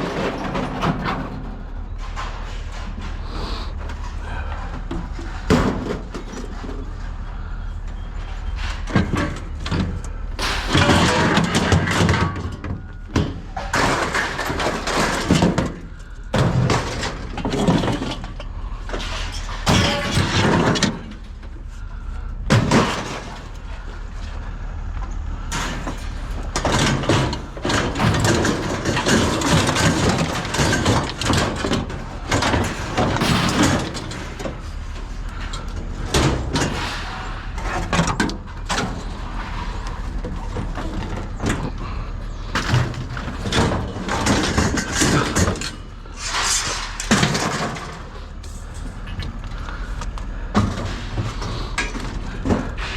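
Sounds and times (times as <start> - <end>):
bangs knocks and clatter: 0.0 - 52.9
steady low rumble: 0.0 - 52.9.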